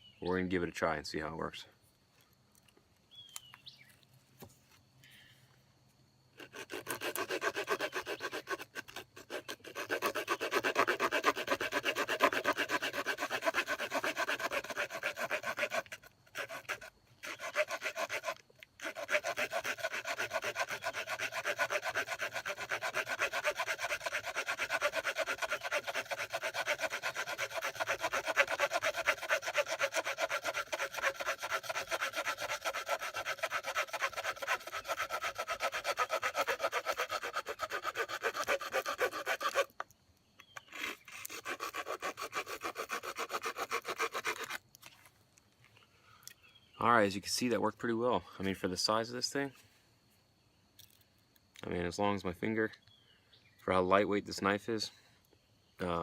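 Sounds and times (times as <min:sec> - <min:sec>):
small saw cutting wood: 0:06.3 - 0:45.0.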